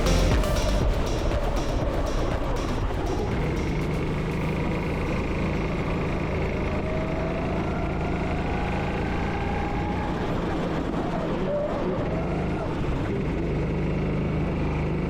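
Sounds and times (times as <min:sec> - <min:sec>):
go-kart engine running: 0:11.8 - 0:15.0.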